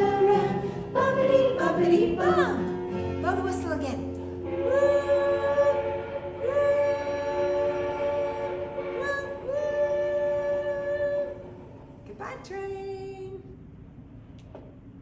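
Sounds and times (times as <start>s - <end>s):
mock train whistle: 4.2s - 11.8s.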